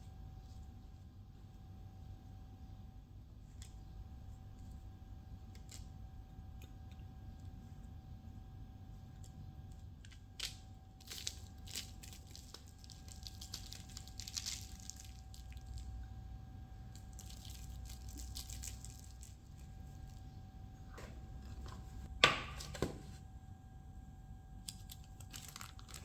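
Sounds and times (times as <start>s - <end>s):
pastry crackling and crunching: 3.2s - 22.1s, 24.5s - 26.0s.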